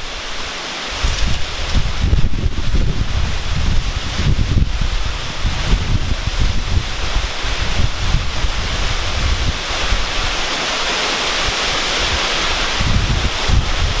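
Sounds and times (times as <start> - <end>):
wind buffeting microphone: 0.0 - 10.6, 11.3 - 14.0
steady rushing hiss: 0.0 - 14.0.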